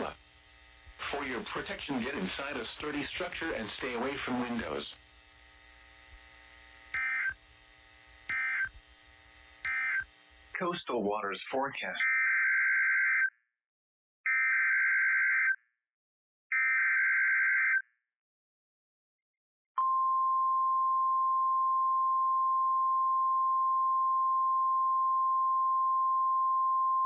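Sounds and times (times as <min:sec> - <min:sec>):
raspy digital data bursts: 0:01.0 - 0:05.0, 0:06.9 - 0:07.4, 0:08.3 - 0:08.8, 0:09.6 - 0:10.2
steady warning alarm tone: 0:06.9 - 0:07.4, 0:08.3 - 0:08.8, 0:09.6 - 0:10.2.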